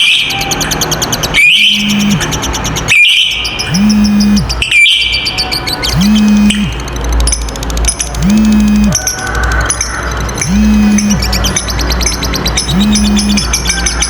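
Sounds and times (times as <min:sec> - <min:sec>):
lovebirds chattering trill: 0:00.0 - 0:14.0
low hum: 0:01.7 - 0:02.3, 0:03.7 - 0:04.6, 0:05.9 - 0:07.1, 0:08.2 - 0:09.0, 0:10.4 - 0:11.3, 0:12.6 - 0:13.5.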